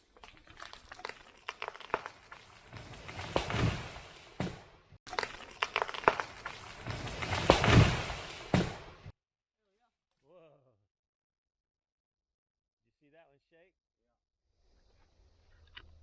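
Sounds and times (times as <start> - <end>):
wood cracking and snapping: 0.0 - 9.1
tree crashing with heavy thuds: 0.6 - 9.1.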